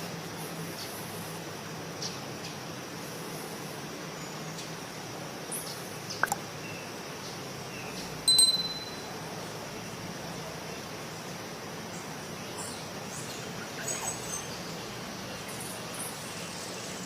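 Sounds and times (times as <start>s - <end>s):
bell-like ringing note: 8.3s - 9.1s.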